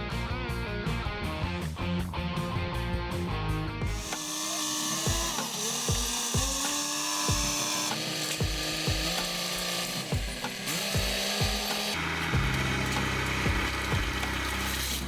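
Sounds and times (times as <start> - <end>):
rasping hiss: 3.9 - 15.0
kick drum beat: 5.9 - 6.6, 7.3 - 7.5, 8.4 - 9.1, 10.1 - 11.6, 12.4 - 12.7, 13.5 - 14.2.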